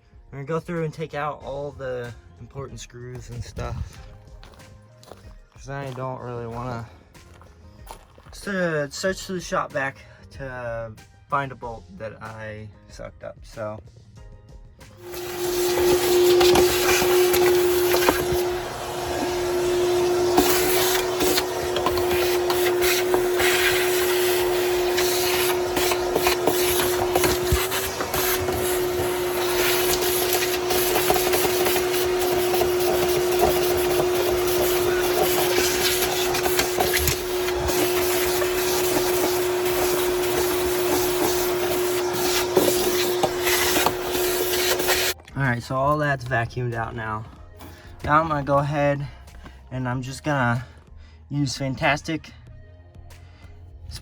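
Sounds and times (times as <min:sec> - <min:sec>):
grit rattling up a hose: 0:15.0 - 0:45.2
shop vac running: 0:15.0 - 0:45.2.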